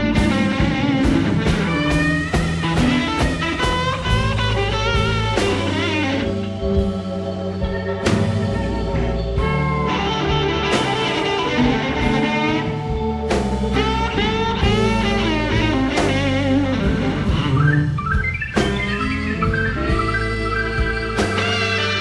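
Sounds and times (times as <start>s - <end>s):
blues guitar lead: 0.0s - 22.0s
drum kit beat: 0.0s - 22.0s.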